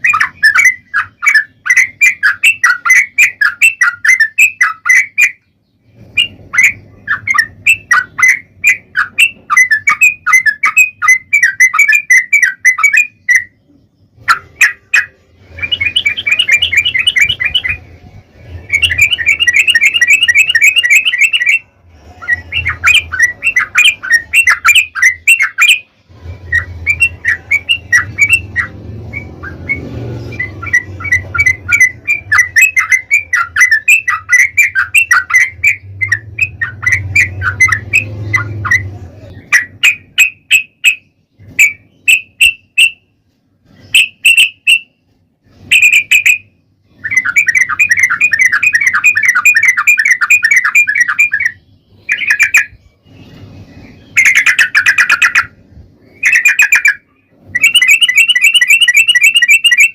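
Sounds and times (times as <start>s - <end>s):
bird chattering and trilling: 0.0s - 43.1s, 43.7s - 59.9s.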